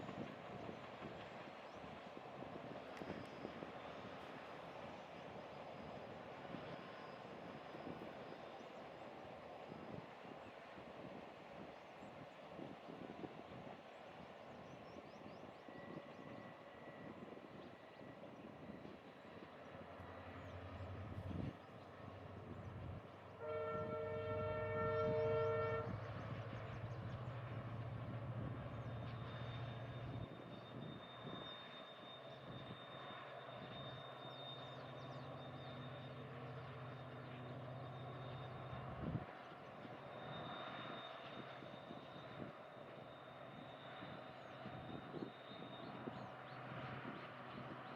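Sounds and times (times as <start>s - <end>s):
diesel locomotive engine drone: 0.0s - 47.9s
train horn: 22.4s - 27.8s, 28.4s - 46.2s.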